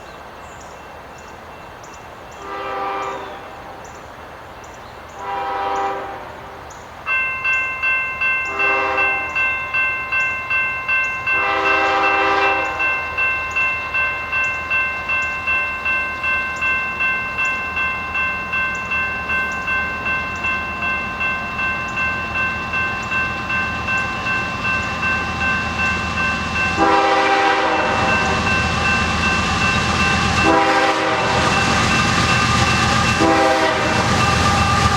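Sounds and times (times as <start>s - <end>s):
locomotive air horn: 2.4s - 3.4s, 5.2s - 6.6s, 8.5s - 9.2s, 11.4s - 12.9s, 26.4s - 34.9s
crossing warning bell ringing: 7.0s - 34.9s.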